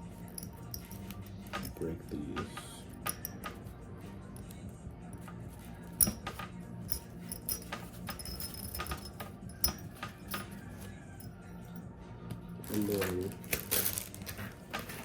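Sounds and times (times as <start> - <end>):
metallic clicks of piston rings: 2.5 - 3.6.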